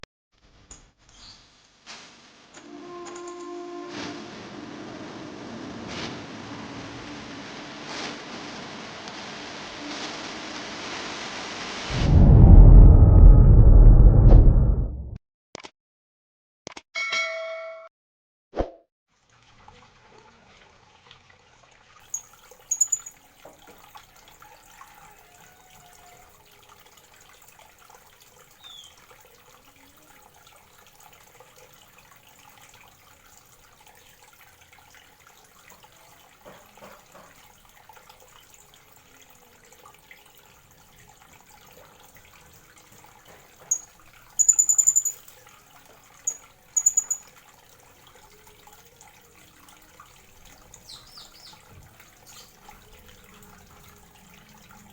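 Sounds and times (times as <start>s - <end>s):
shrill bird calls: 22.7s - 23.1s, 28.6s - 29.0s, 43.7s - 45.2s, 46.3s - 47.2s.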